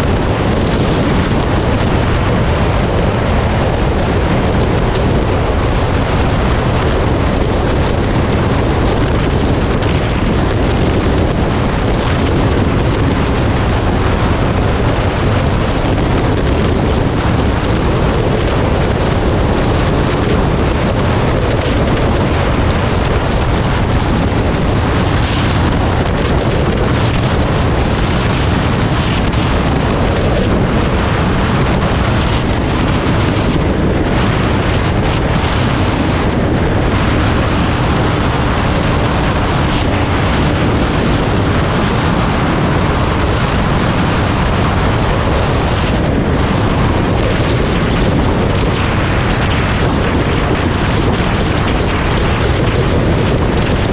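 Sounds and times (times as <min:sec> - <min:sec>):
wind noise on microphone: 0:00.0 - 0:53.9.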